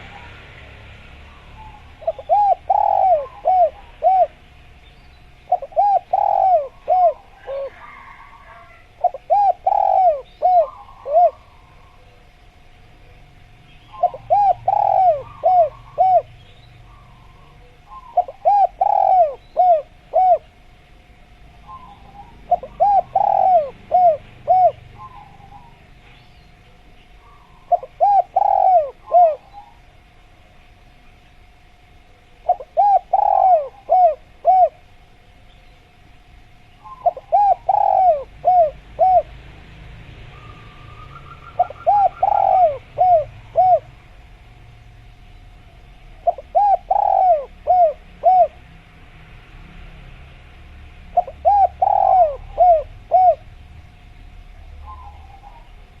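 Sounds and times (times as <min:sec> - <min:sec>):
dove cooing: 0:00.0 - 0:04.6, 0:05.4 - 0:12.3, 0:13.0 - 0:20.8, 0:21.6 - 0:30.0, 0:32.3 - 0:35.1, 0:36.8 - 0:39.7, 0:40.3 - 0:44.6, 0:45.7 - 0:48.7, 0:51.1 - 0:53.7, 0:54.5 - 0:56.0
faint steady tone: 0:00.0 - 0:56.0.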